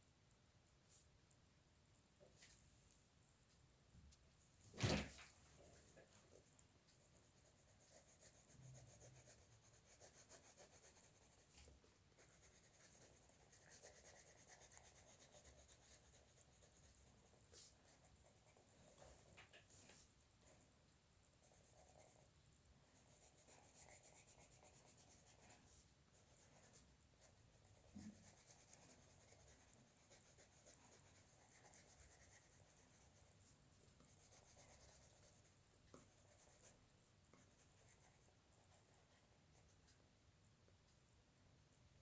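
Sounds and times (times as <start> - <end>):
pen scratching on paper: 7.0 - 11.5, 12.2 - 18.7, 23.0 - 25.6, 26.2 - 33.3, 34.0 - 36.7.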